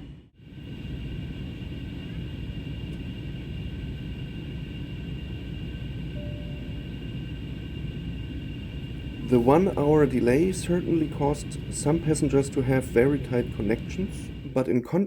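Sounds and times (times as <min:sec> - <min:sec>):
aircraft cabin rumble: 0:00.0 - 0:14.9
faint high whine: 0:00.0 - 0:15.0
soft tone: 0:06.2 - 0:07.2.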